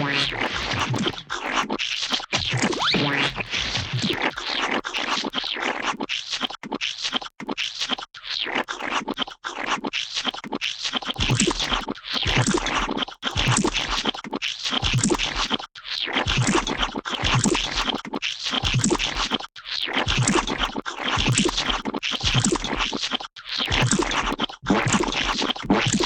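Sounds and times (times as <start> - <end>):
gooey wet splats and squelches: 23.7 - 26.0.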